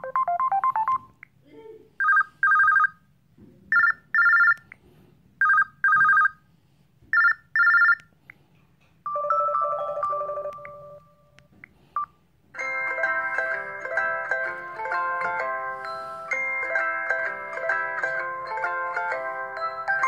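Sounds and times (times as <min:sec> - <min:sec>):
chiming ringtone: 0:00.0 - 0:01.1, 0:03.7 - 0:04.6, 0:07.2 - 0:08.0, 0:09.1 - 0:11.4, 0:12.6 - 0:20.0
electronic ringtone melody: 0:00.0 - 0:01.2, 0:02.0 - 0:03.0, 0:03.7 - 0:04.6, 0:05.4 - 0:06.4, 0:07.2 - 0:08.0, 0:09.1 - 0:11.4, 0:12.6 - 0:20.0
telephone bell ringtone: 0:02.0 - 0:03.0, 0:03.7 - 0:04.6, 0:05.4 - 0:06.4, 0:07.2 - 0:08.0, 0:09.1 - 0:11.3, 0:12.6 - 0:20.0.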